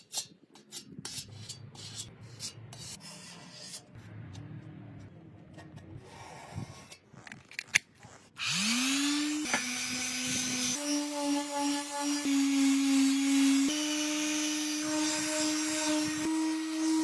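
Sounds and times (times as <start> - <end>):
electric power tool whine: 8.4 - 17.0.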